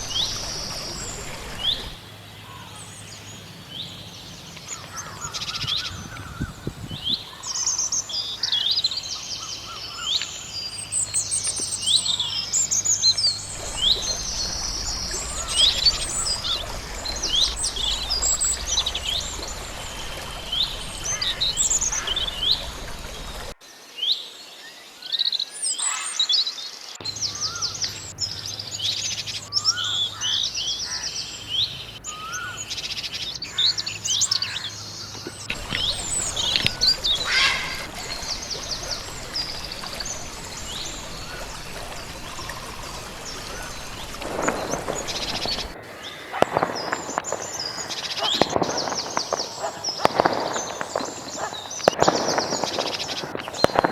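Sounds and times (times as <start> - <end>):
birds chirping and singing: 0.0 - 23.6, 27.0 - 53.9
lower louder bird calls: 0.0 - 23.6, 27.0 - 53.9.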